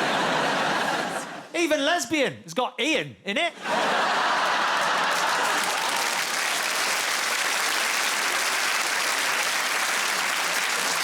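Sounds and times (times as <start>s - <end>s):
audience laughing: 0.0s - 1.5s, 3.6s - 6.2s
audience applauding: 3.8s - 11.0s.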